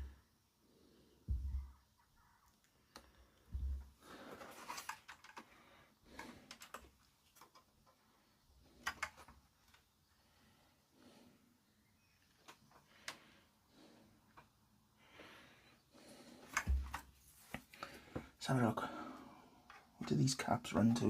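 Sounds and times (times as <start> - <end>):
light clicks and rattles: 2.6 - 8.1.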